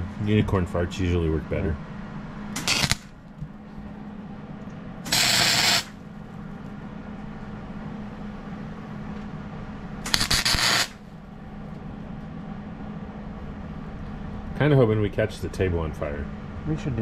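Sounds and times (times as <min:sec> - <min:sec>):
steady low hum: 0:00.0 - 0:17.0
welding arc hissing and crackling: 0:02.6 - 0:03.1, 0:05.1 - 0:06.0, 0:10.1 - 0:11.0.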